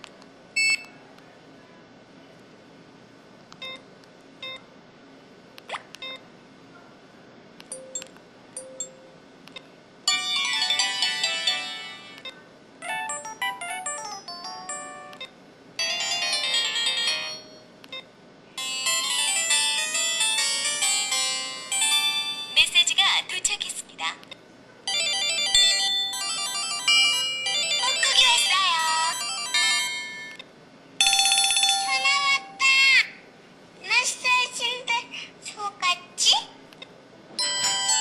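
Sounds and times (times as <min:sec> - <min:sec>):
melodic ringtone snippets: 0:10.1 - 0:12.2, 0:12.8 - 0:15.2, 0:15.8 - 0:17.6, 0:18.6 - 0:22.6, 0:24.9 - 0:30.4, 0:31.0 - 0:32.7, 0:37.4 - 0:38.0.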